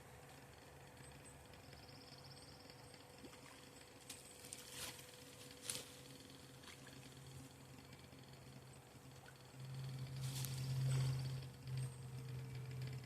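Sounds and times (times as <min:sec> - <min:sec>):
low steady hum: 0:00.0 - 0:13.0
faint clicks and rustles: 0:02.9 - 0:13.0.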